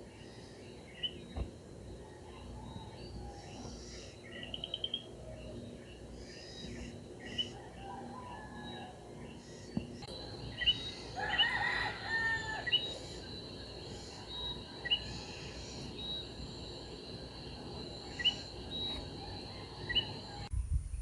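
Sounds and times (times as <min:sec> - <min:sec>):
high-pitched insect trill: 0:00.0 - 0:20.5
rooster crowing: 0:02.0 - 0:03.7, 0:07.4 - 0:09.1, 0:10.2 - 0:13.5, 0:19.0 - 0:20.5.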